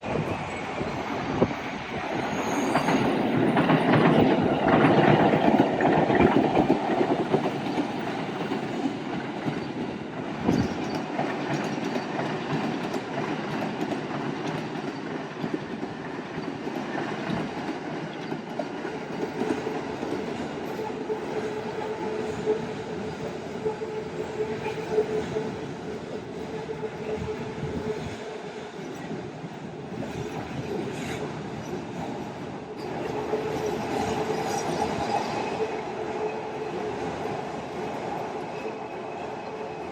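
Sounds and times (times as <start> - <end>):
train wheels clattering on rails: 1.4 - 39.1.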